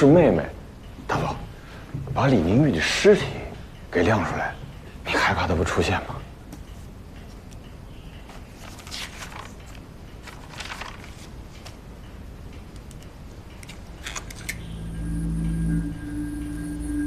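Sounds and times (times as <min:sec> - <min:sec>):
soft rustles: 0:08.2 - 0:11.8.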